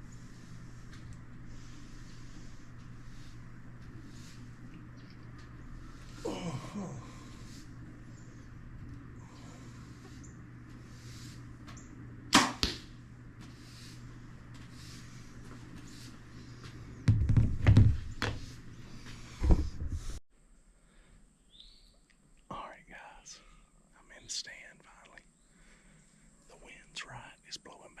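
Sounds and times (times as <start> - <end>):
arrow striking target: 12.3 - 12.9
bowstring snap: 12.3 - 12.9
heavy knocks and thumps: 17.0 - 18.5.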